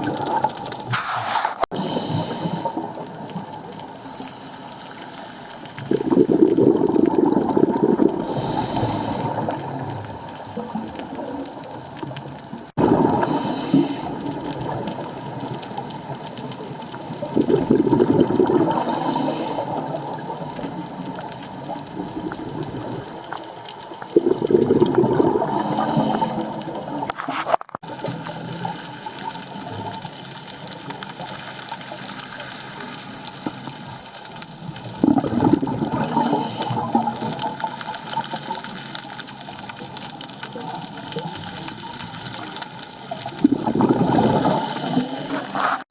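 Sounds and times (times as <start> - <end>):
exhaled bubbles gushing: 0.0 - 3.7, 5.7 - 31.3, 33.8 - 45.8
regulator breath hiss: 0.9 - 2.8, 4.0 - 5.6, 8.3 - 9.5, 13.2 - 14.2, 18.8 - 19.9, 25.5 - 26.8.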